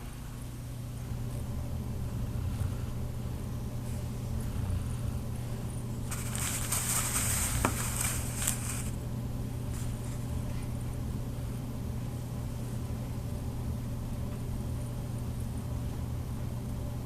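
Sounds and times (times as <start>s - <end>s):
steady low hum: 0.0s - 17.0s
hissy snoring breath: 2.0s - 9.0s.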